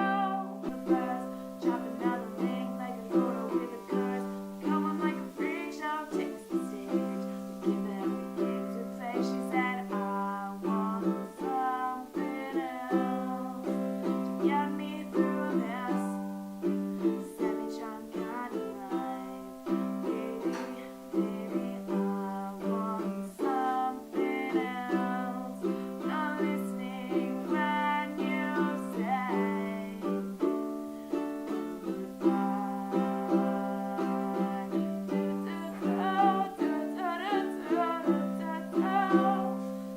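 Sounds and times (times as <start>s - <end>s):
plucked string instrument: 0.0s - 39.9s.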